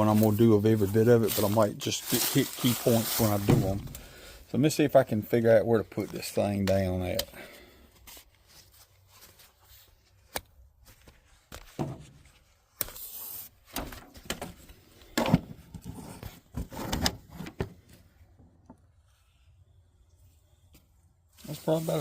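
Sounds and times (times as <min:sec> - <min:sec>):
thumps: 0:03.4 - 0:04.2.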